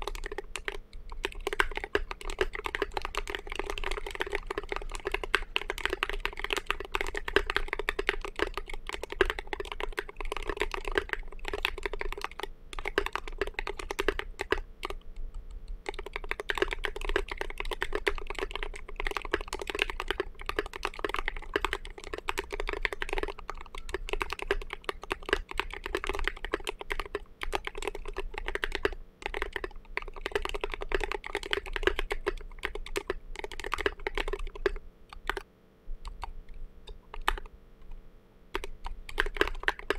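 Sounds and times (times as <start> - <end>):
mechanical keyboard typing: 0.0 - 15.0, 15.8 - 35.4, 36.0 - 39.9.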